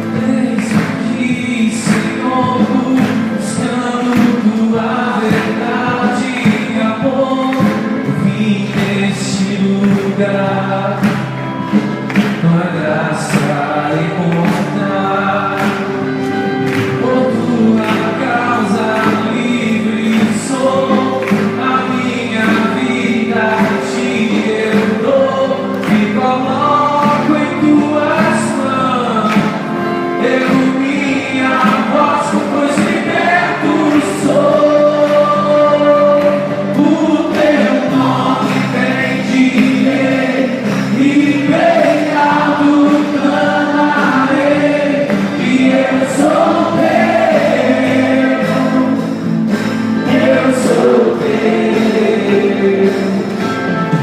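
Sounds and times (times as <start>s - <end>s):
steady drum beat: 0.0s - 54.0s
sustained instrumental chords: 0.0s - 54.0s
voices singing together: 0.0s - 54.0s.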